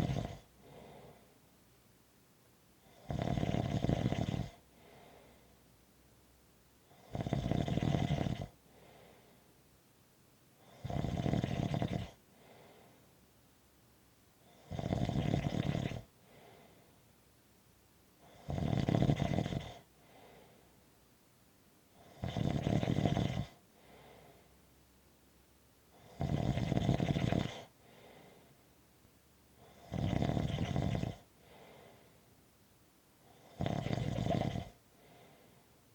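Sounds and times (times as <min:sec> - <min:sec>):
loud snoring: 0:00.0 - 0:00.9, 0:02.8 - 0:04.6, 0:06.9 - 0:08.6, 0:10.6 - 0:12.2, 0:14.4 - 0:16.4, 0:18.2 - 0:19.9, 0:22.0 - 0:23.6, 0:25.9 - 0:27.7, 0:29.6 - 0:31.8, 0:33.2 - 0:35.3
soft breath: 0:00.0 - 0:01.5, 0:04.6 - 0:05.8, 0:08.6 - 0:09.6, 0:12.2 - 0:13.2, 0:16.1 - 0:17.2, 0:19.8 - 0:20.9, 0:23.6 - 0:24.7, 0:27.5 - 0:28.7, 0:31.2 - 0:32.4, 0:34.8 - 0:35.9.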